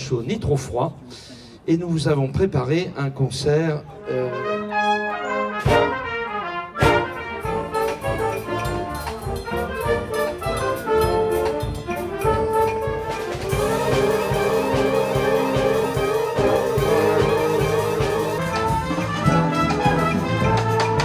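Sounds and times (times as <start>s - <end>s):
brass ensemble playing jazz: 4.0s - 21.0s
sharp percussive hits: 12.9s - 21.0s.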